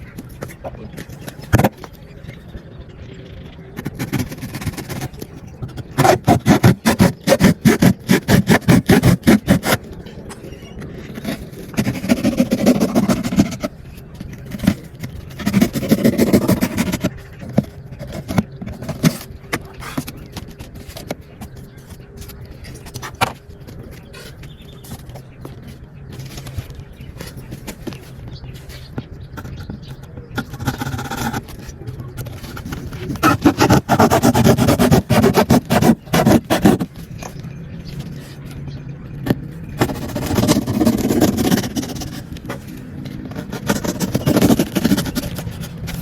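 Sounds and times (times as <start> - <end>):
cardboard scraping: 3.8 - 9.9, 11.0 - 25.1, 30.4 - 37.4, 39.3 - 46.0.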